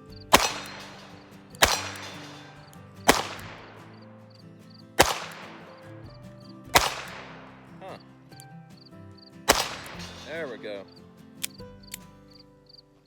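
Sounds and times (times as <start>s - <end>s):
revolver shots with echo: 0.3s - 4.0s, 5.0s - 5.9s, 6.8s - 7.6s, 9.5s - 10.5s.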